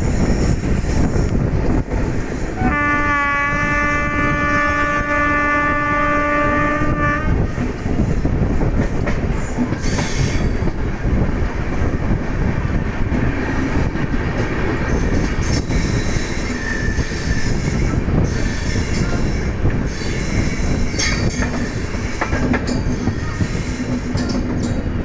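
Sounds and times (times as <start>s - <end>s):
train rumble and wheel clatter: 0.0s - 25.0s
train horn: 2.6s - 7.5s.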